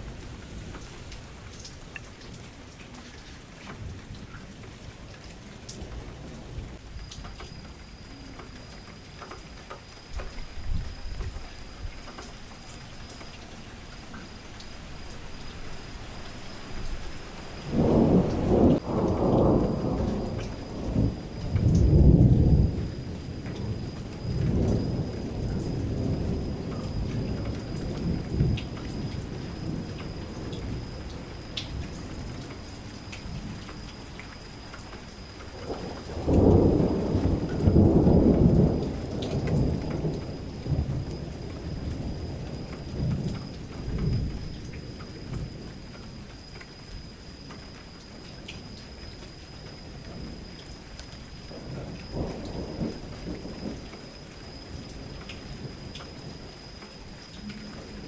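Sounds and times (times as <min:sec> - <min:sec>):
steady rainfall: 0:00.0 - 0:58.0
low rolls of thunder: 0:16.3 - 0:58.0.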